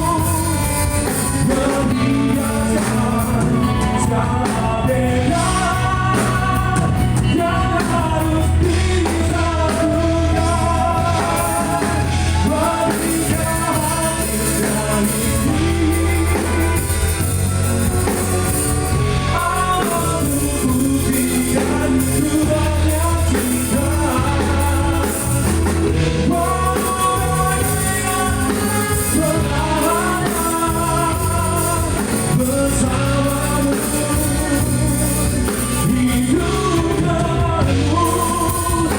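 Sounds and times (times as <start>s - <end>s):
instrumental accompaniment: 0.0s - 38.9s
person singing: 0.0s - 38.9s
steady bass line: 0.0s - 38.9s.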